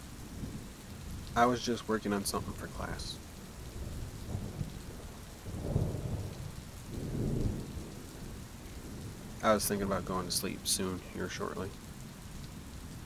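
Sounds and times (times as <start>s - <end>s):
low thunder rumbling: 0.0s - 11.8s
steady rain: 0.0s - 13.0s.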